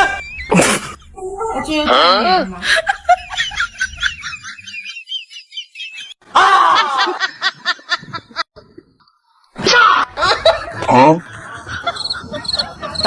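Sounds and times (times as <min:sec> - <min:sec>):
high-pitched laughter: 0:10.0 - 0:13.0.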